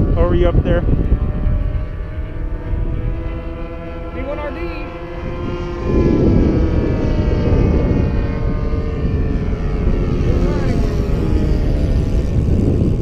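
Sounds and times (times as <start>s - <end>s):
low rushing noise: 0.0s - 13.0s
model airplane engine running: 0.0s - 13.0s.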